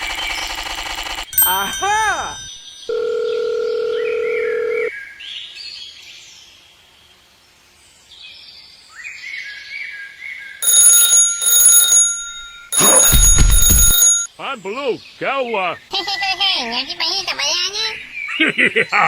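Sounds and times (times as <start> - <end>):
alarm clock bell ringing: 1.3 - 3.9, 10.6 - 14.3
steady beep: 12.7 - 14.3.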